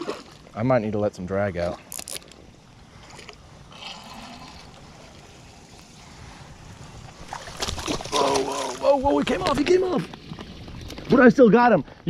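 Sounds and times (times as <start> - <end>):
water sloshing and splashing: 0.0 - 0.7, 1.6 - 11.3.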